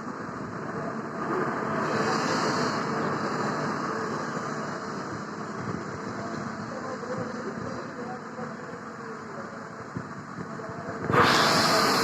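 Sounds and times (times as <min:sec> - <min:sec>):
machine running noise: 0:00.0 - 0:12.0
brief hiss: 0:11.1 - 0:12.0.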